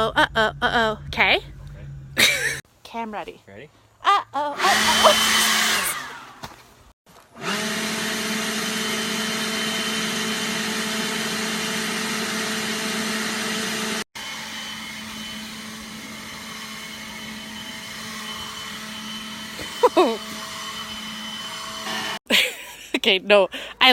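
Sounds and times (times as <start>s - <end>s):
battery blower running: 4.6s - 6.6s, 7.2s - 22.2s.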